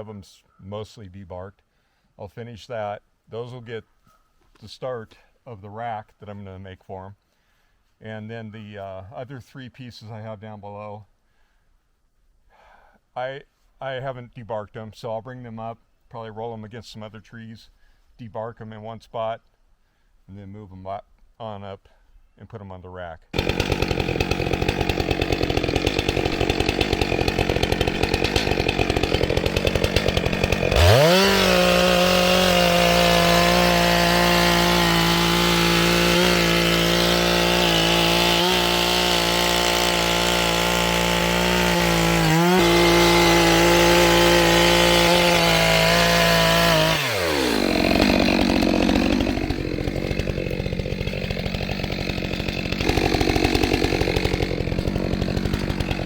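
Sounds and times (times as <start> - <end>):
chainsaw revving: 23.4 - 56.0.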